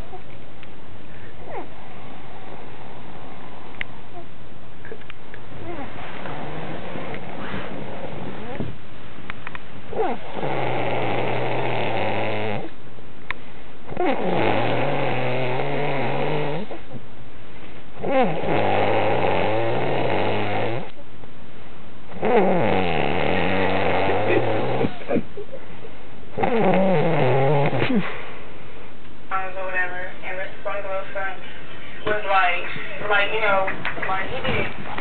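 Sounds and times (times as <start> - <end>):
person snoring: 10.0 - 12.7, 13.9 - 16.8, 22.2 - 25.1.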